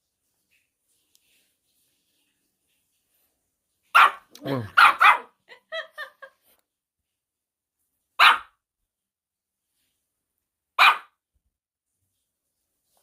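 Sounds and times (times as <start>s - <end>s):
dog barking: 3.9s - 5.4s, 8.2s - 8.6s, 10.8s - 11.2s.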